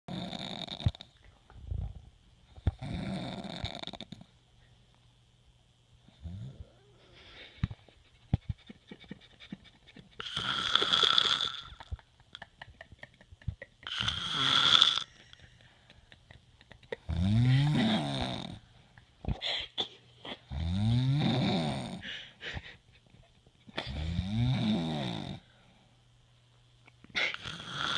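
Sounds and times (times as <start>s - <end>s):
person snoring: 0.1s - 1.0s, 2.7s - 4.2s, 10.2s - 11.8s, 13.8s - 15.2s, 17.0s - 18.6s, 20.5s - 22.1s, 23.8s - 25.5s, 27.2s - 27.9s.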